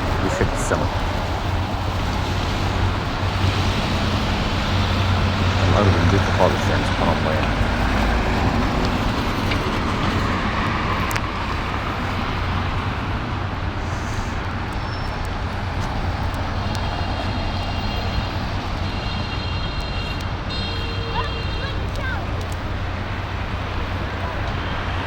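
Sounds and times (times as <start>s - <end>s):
vehicles passing: 0.0s - 25.0s.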